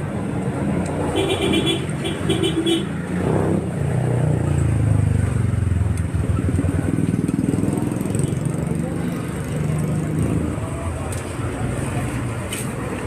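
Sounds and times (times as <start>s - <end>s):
street traffic: 0.0s - 13.0s
vehicle engine humming: 0.0s - 13.0s.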